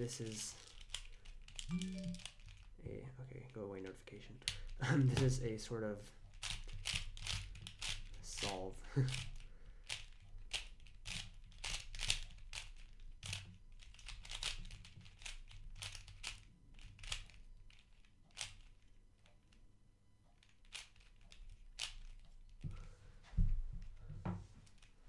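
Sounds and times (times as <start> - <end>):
puzzle cube plastic clicking: 0.1 - 2.8, 4.4 - 5.5, 6.3 - 19.6, 20.4 - 22.6.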